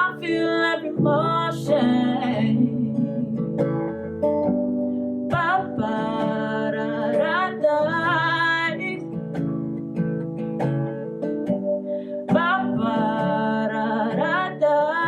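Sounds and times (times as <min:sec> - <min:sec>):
woman singing wordlessly: 0:00.0 - 0:04.0, 0:05.3 - 0:09.2, 0:12.2 - 0:15.0
acoustic guitar strumming: 0:00.0 - 0:15.0.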